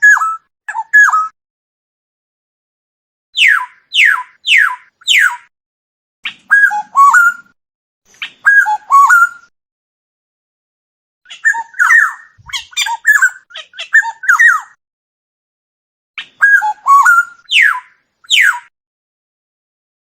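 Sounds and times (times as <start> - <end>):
harsh downward bird calls: 3.4 - 5.5, 11.3 - 14.8, 16.2 - 18.7.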